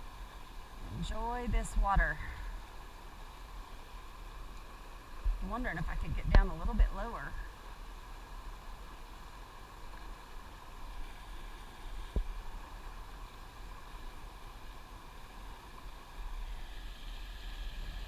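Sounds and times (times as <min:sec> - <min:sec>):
fast-flowing river water: 0:00.0 - 0:18.0
wind rumble on microphone: 0:05.2 - 0:07.1.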